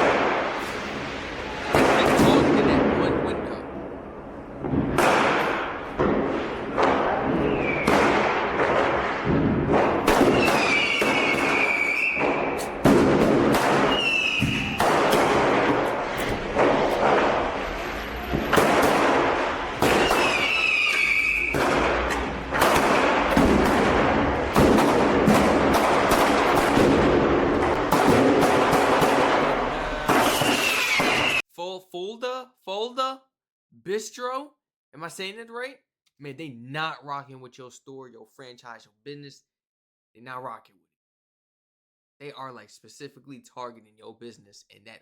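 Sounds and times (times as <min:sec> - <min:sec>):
firecrackers banging: 0:00.0 - 0:31.4
firework whistles: 0:00.4 - 0:02.4, 0:07.1 - 0:08.2, 0:10.0 - 0:23.4, 0:29.6 - 0:31.5.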